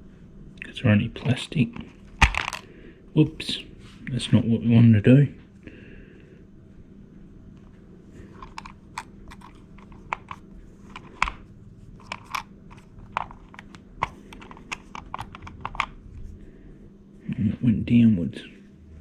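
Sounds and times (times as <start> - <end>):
plastic clock parts clicking: 8.4 - 11.4, 12.0 - 15.9.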